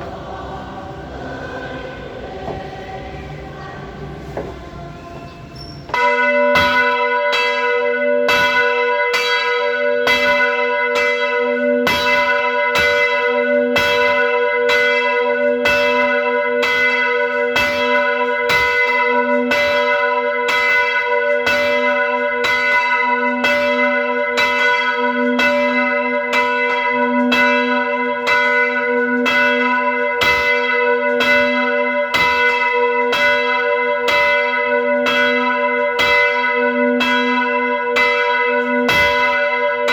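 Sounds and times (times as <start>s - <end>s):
steady low hum: 0.0s - 5.6s
church bell tolling: 0.0s - 39.9s.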